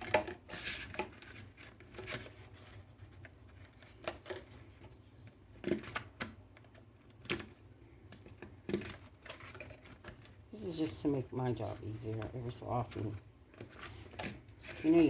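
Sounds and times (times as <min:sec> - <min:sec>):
plastic parts clicking: 0:00.0 - 0:10.4.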